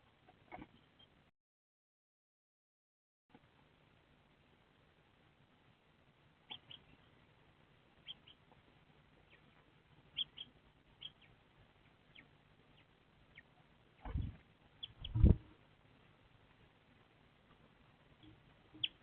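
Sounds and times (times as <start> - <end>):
sparrow small call: 10.2 - 11.3.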